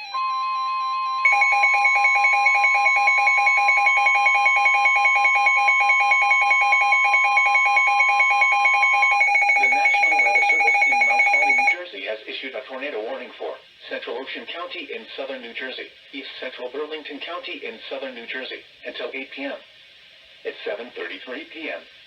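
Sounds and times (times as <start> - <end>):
pulsing two-pitch alarm beep: 1.2 - 11.8
steady high alarm tone: 1.2 - 11.8
synthesized announcer voice: 1.3 - 11.8.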